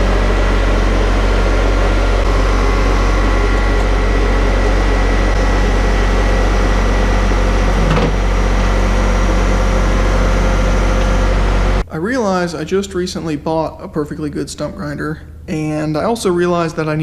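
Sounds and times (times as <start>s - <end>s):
vehicle engine hum: 0.0s - 11.9s.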